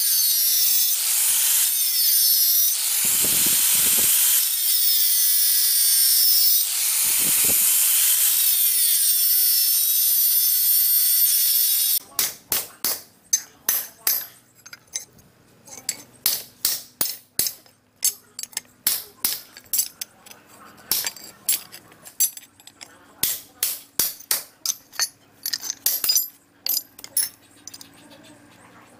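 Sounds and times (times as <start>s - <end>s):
power tool running on metal: 0.0s - 12.0s.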